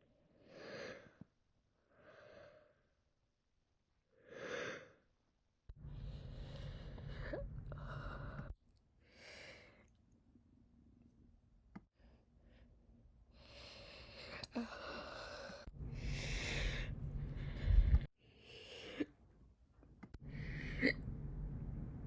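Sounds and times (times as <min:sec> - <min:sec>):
woman breathing: 0:05.8 - 0:10.0, 0:12.0 - 0:19.2, 0:20.1 - 0:21.2.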